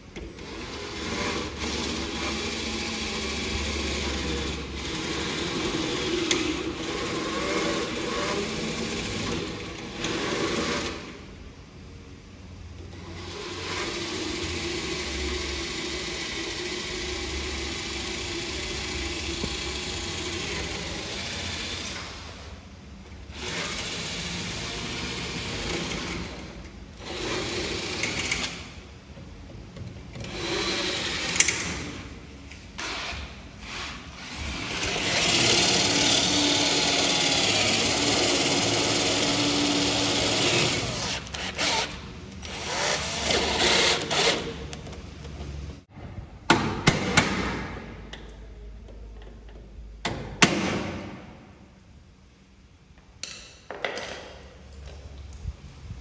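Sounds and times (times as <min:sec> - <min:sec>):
power tool motor under load: 0:32.8 - 0:44.6.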